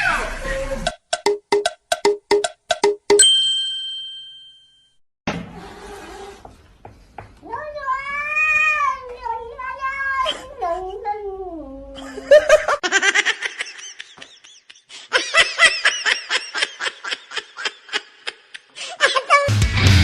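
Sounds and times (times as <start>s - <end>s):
cat meowing: 7.4s - 11.1s.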